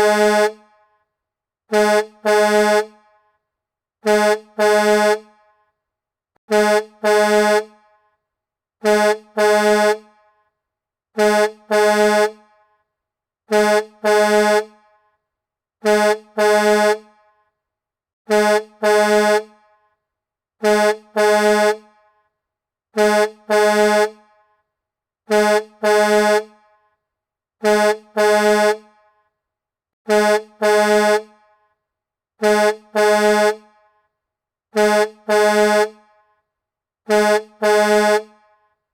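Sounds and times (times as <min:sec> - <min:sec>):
truck air horn double blast: 0:00.0 - 0:00.8, 0:01.7 - 0:03.3, 0:04.0 - 0:05.6, 0:06.5 - 0:08.1, 0:08.8 - 0:10.4, 0:11.2 - 0:12.8, 0:13.5 - 0:15.1, 0:15.8 - 0:17.3, 0:18.3 - 0:19.8, 0:20.6 - 0:22.3, 0:22.9 - 0:24.4, 0:25.3 - 0:26.9, 0:27.6 - 0:29.2, 0:30.1 - 0:31.6, 0:32.4 - 0:34.0, 0:34.7 - 0:36.3, 0:37.1 - 0:38.6.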